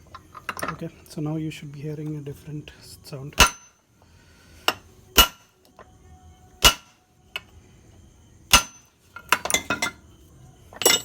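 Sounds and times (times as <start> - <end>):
hammer striking metal: 3.3 - 3.8, 4.7 - 5.5, 6.6 - 7.0, 8.5 - 10.0.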